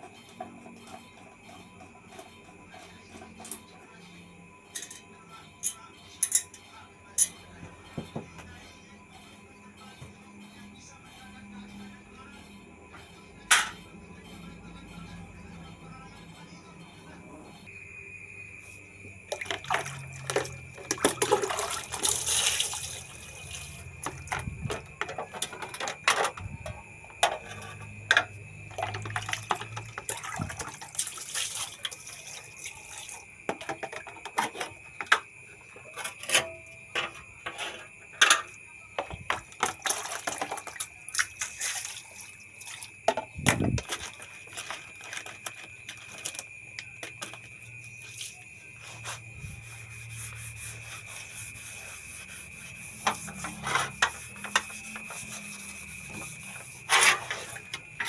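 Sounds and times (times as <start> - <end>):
water splashing and running: 19.3 - 23.8, 28.8 - 33.2, 39.6 - 43.0.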